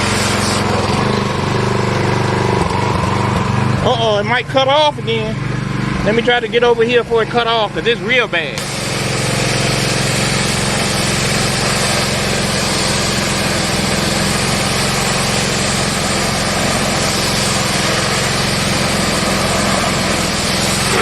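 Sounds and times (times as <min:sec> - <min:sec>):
high-pressure water spray hissing: 0:00.0 - 0:03.5, 0:08.6 - 0:21.0
pressure washer engine running: 0:00.0 - 0:21.0.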